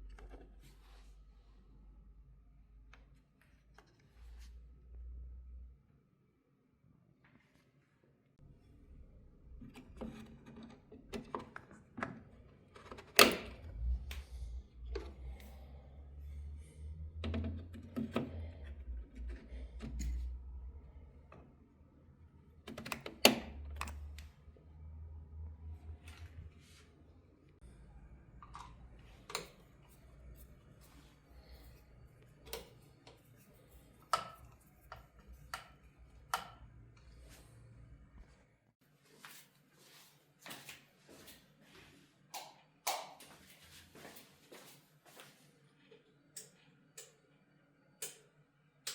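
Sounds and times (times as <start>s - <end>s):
faint low hum: 8.4s - 38.8s
low hum: 13.4s - 22.7s
hard parts clicking and tapping: 17.1s - 20.4s, 31.5s - 37.1s.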